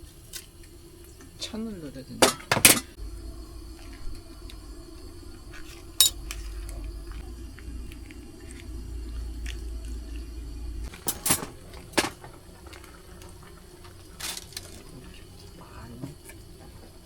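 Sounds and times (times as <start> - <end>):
low steady hum: 0.0 - 17.0
metal utensils clinking on pot: 2.2 - 3.0.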